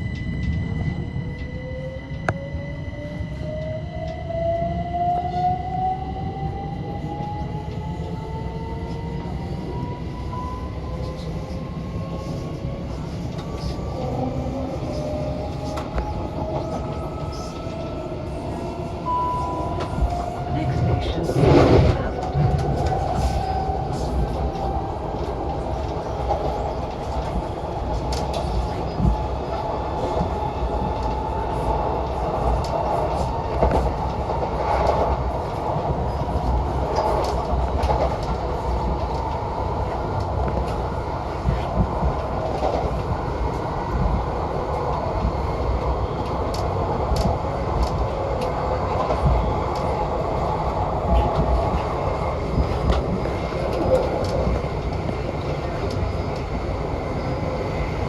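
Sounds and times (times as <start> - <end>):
train rumbling: 0.0 - 58.0.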